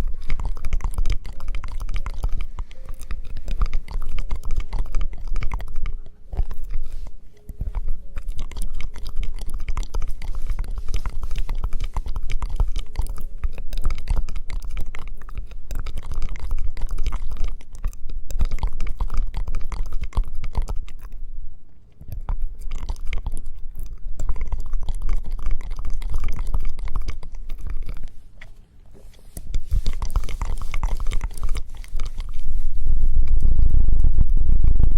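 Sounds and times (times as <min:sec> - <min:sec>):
scratching and rubbing on microphone: 0:00.0 - 0:17.6, 0:25.7 - 0:33.7
deep rumble: 0:29.6 - 0:34.9.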